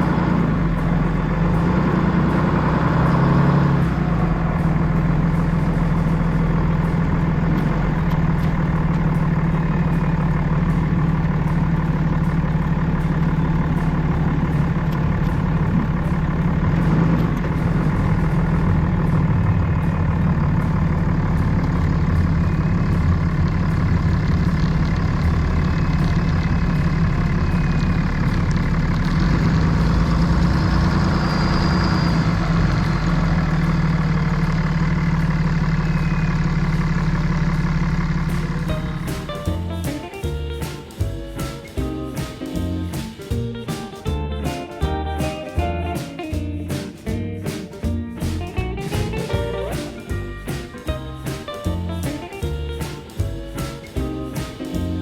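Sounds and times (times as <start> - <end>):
engine running steadily: 0.0 - 55.0.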